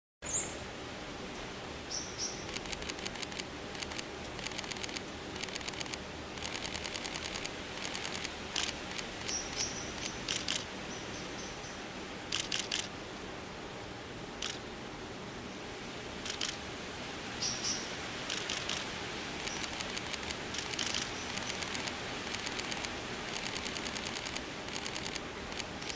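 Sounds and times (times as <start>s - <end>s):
outdoor background hiss: 0.3s - 25.9s
camera shutter clicking in bursts: 2.5s - 10.7s, 12.3s - 12.9s, 14.4s - 14.6s, 16.2s - 16.6s, 18.3s - 25.9s.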